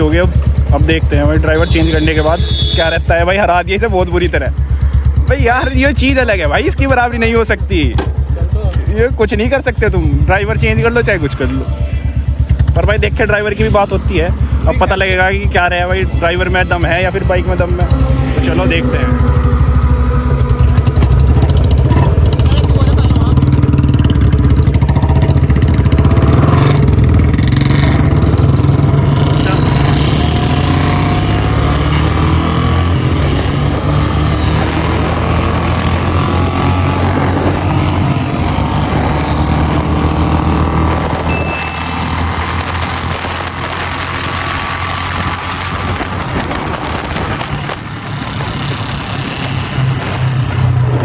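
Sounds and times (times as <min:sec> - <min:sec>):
motorcycle engine thumping: 0:00.0 - 0:03.2, 0:06.7 - 0:10.4, 0:12.0 - 0:30.0
motorcycle engines racing: 0:00.0 - 0:51.0.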